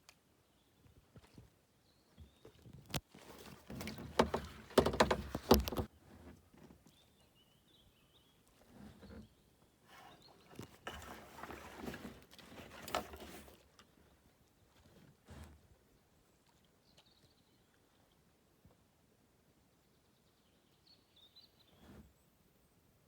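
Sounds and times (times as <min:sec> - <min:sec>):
paddle strokes splashing: 0:03.1 - 0:05.9, 0:10.6 - 0:13.7.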